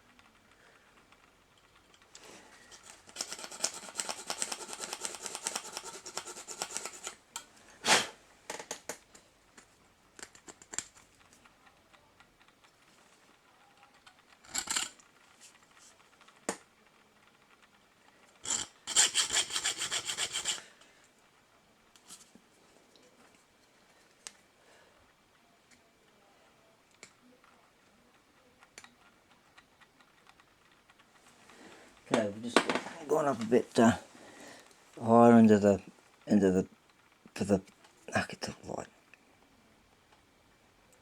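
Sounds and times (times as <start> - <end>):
hand file rasping on metal: 3.1 - 7.2, 18.4 - 20.6.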